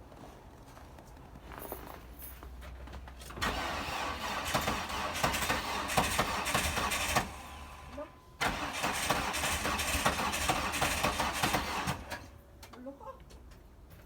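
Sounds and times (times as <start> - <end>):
car engine cranking: 3.3 - 12.4.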